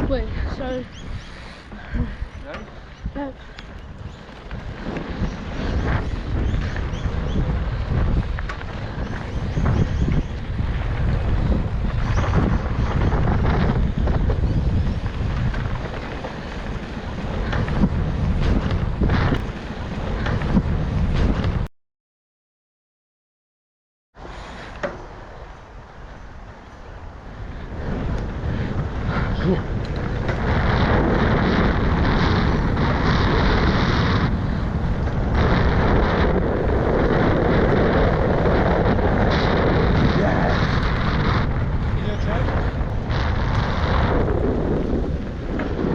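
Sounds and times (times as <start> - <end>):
wind buffeting microphone: 0.0 - 21.7, 24.2 - 45.9
bike knocks on rough trail: 11.6 - 21.6.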